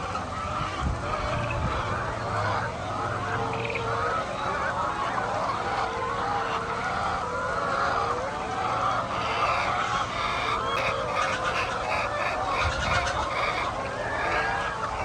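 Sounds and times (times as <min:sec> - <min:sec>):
poultry calling: 0:05.5 - 0:15.0.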